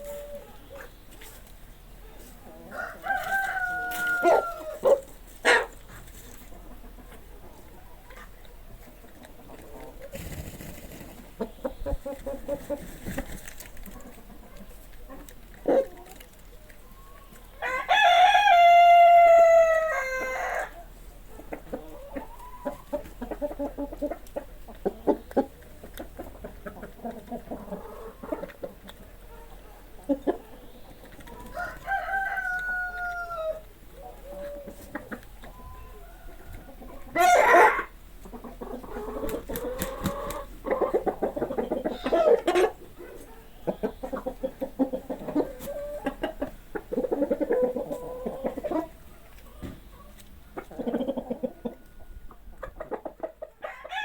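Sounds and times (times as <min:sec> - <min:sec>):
hens clucking: 0:00.0 - 0:54.0
rooster crowing: 0:02.7 - 0:04.9, 0:17.6 - 0:20.7, 0:31.5 - 0:33.6, 0:53.6 - 0:54.0.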